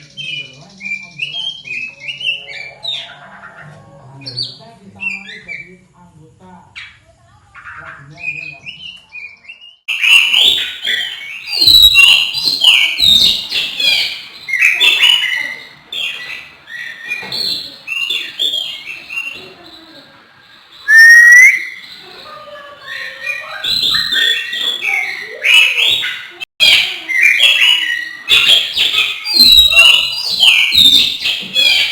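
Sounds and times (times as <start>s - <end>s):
bird singing whistles and chirps: 0.0s - 3.2s, 4.2s - 5.8s, 8.1s - 31.9s.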